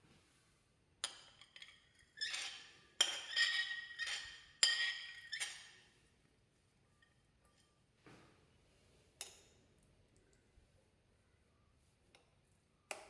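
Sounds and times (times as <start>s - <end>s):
utensil clinking on glass bowl: 1.0s - 5.8s.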